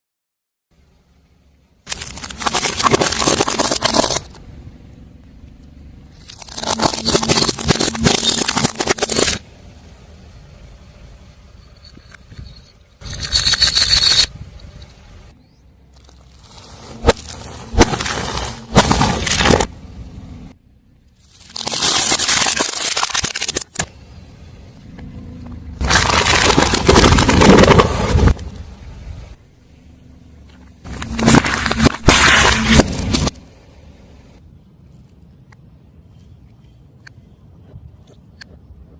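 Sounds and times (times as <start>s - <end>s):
low car noise: 0.8s - 22.3s, 23.4s - 38.9s
car tyre crunching objects: 1.8s - 11.0s, 15.8s - 29.4s, 30.4s - 33.6s.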